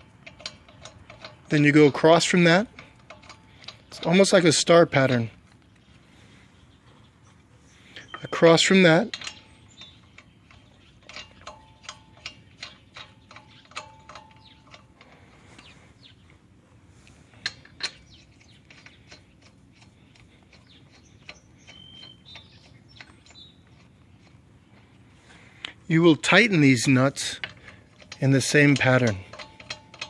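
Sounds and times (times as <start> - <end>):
ratchet wrench clicking: 0.0 - 4.4, 8.1 - 15.7, 26.8 - 30.0.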